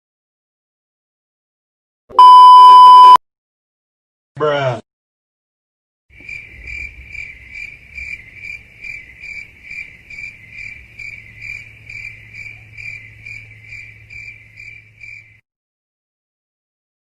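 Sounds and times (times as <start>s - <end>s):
crickets chirping: 6.1s - 15.4s.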